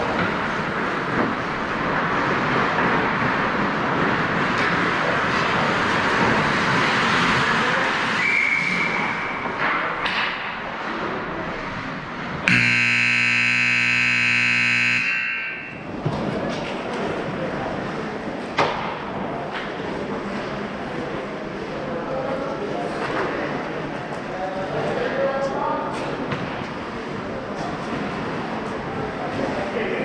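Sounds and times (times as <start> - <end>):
short high whistle: 8.2 - 9.2
arena horn blaring: 12.5 - 15.9.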